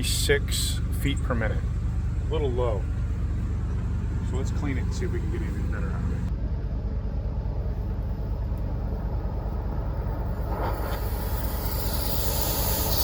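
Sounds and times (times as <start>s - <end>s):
air rushing through dryer vent: 7.4s - 13.0s
air hissing: 9.6s - 13.0s.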